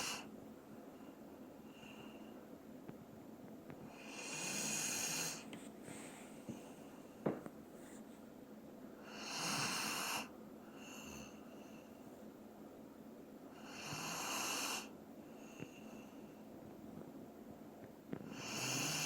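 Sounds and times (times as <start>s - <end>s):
dog snoring: 0.0s - 0.3s, 3.9s - 5.5s, 9.0s - 11.3s, 13.6s - 14.9s, 18.2s - 19.0s.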